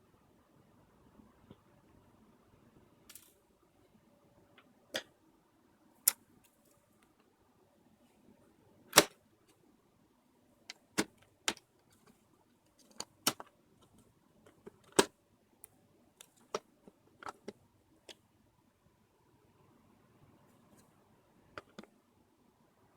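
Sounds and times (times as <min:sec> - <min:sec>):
plastic and metal parts clicking: 0:16.2 - 0:17.6, 0:21.6 - 0:21.9.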